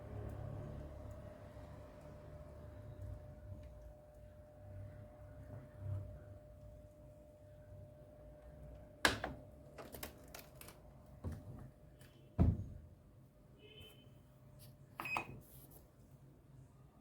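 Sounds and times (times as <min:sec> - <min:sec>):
washing machine clicks and knocks: 0:09.0 - 0:10.0.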